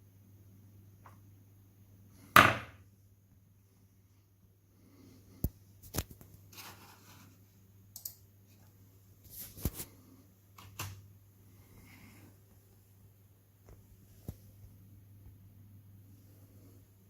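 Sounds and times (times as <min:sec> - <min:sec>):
faint steady low hum: 0:00.0 - 0:17.0
sharp irregular clicks: 0:07.9 - 0:08.2.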